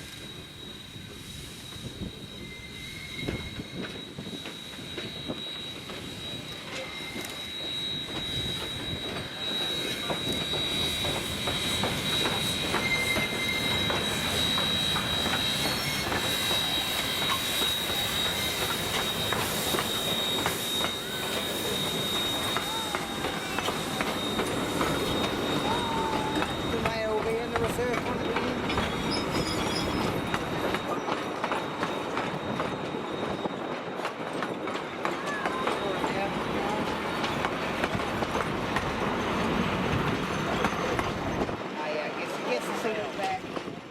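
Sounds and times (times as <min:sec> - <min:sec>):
thin high squeal: 0:00.0 - 0:27.1, 0:27.8 - 0:33.8
train wheels rumbling on rail: 0:00.0 - 0:43.9
train wheels clicking over rail joints: 0:03.8 - 0:25.6.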